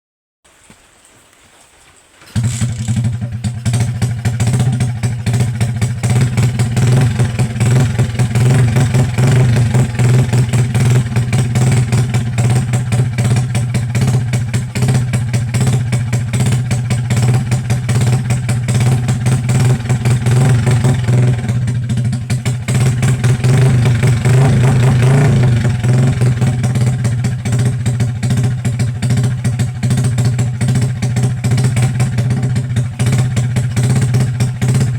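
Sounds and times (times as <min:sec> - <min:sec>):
truck engine running: 0:02.4 - 0:34.9.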